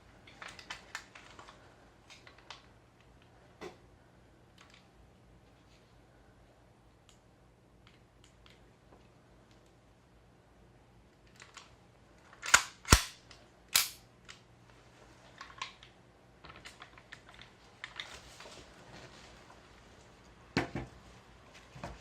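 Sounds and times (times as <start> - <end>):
airsoft rifle shots: 12.5 - 13.2, 13.8 - 14.0.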